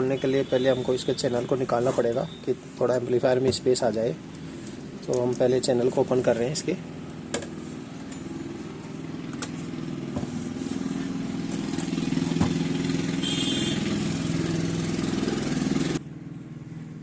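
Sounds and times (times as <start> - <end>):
small engine idling: 10.9 - 17.0.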